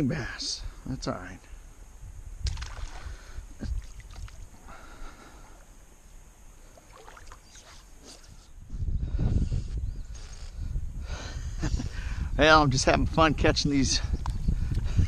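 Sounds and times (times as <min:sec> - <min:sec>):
water sounds: 0:02.4 - 0:04.7, 0:06.6 - 0:08.3.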